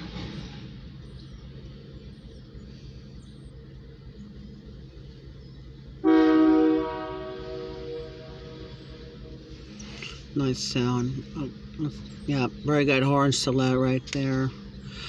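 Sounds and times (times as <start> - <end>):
low steady rumble: 0.0 - 15.0
locomotive horn: 6.0 - 9.9.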